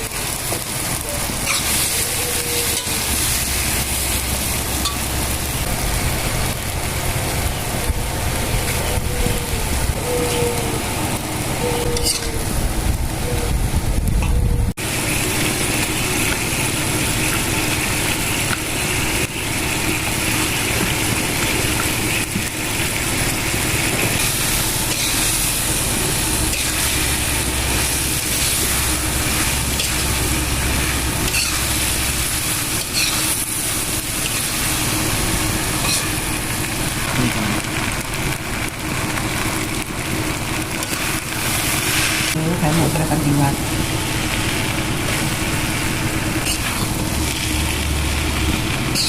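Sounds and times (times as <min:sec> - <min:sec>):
food sizzling in hot pan: 0:00.0 - 0:14.0, 0:14.8 - 0:49.0
steady low rumble: 0:03.0 - 0:11.7, 0:12.3 - 0:15.4, 0:22.6 - 0:48.9.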